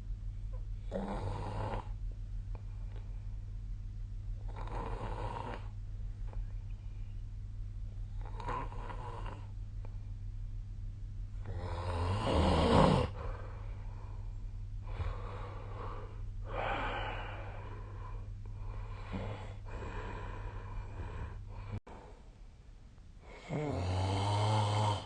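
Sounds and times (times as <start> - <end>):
steady low hum: 0.0 - 25.0
person snoring: 0.9 - 2.0, 4.4 - 5.7, 8.2 - 9.5, 11.4 - 13.6, 14.9 - 21.8, 23.2 - 25.0.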